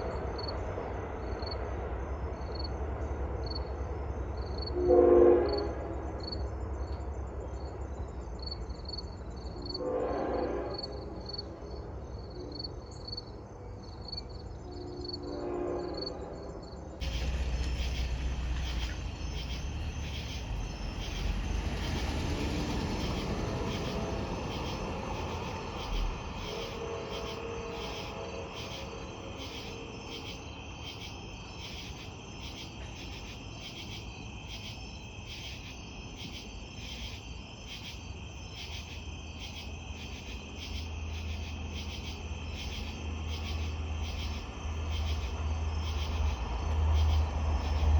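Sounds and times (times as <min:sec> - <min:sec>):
crickets chirping: 0:00.0 - 0:47.9
train rumbling and rattling past: 0:00.0 - 0:47.9
train horn blasts: 0:04.7 - 0:06.1, 0:09.7 - 0:11.3, 0:14.7 - 0:18.8, 0:25.1 - 0:29.3.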